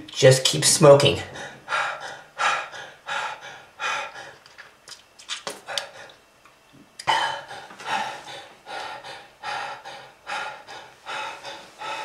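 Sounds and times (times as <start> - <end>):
gasping breaths: 1.3 - 4.6, 5.5 - 6.2, 7.0 - 12.0.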